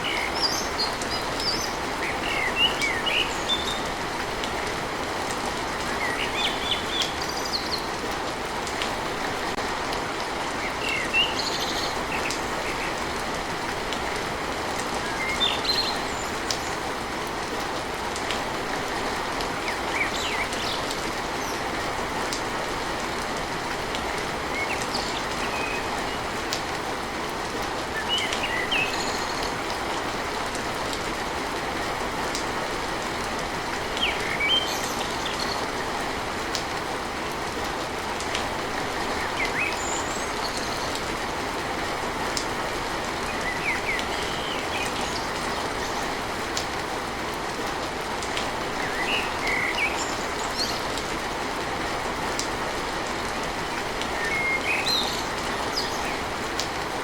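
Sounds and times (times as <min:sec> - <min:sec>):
rain on a tin roof: 0:00.0 - 0:57.0
birds chirping: 0:43.0 - 0:46.2.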